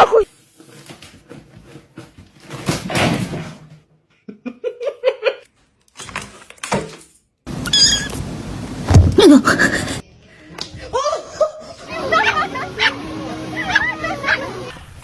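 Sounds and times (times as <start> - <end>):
cat calling: 7.5 - 10.0
knocks: 7.5 - 10.0.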